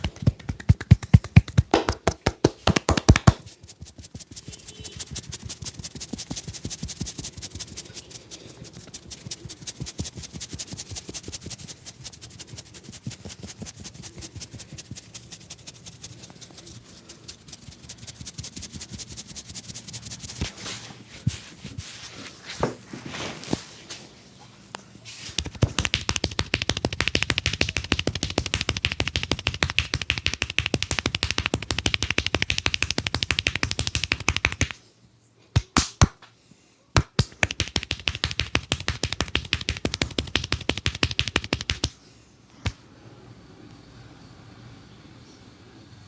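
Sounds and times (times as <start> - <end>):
hands slapping in massage: 0.0 - 7.8, 8.7 - 16.5, 17.3 - 19.2, 25.3 - 34.8, 35.5 - 36.3, 37.0 - 42.0.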